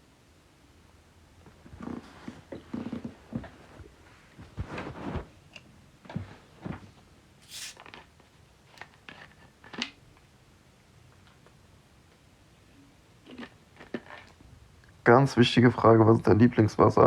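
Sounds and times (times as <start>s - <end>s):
stomach growling: 1.7s - 3.9s, 13.2s - 14.4s
brief hiss: 7.4s - 7.8s.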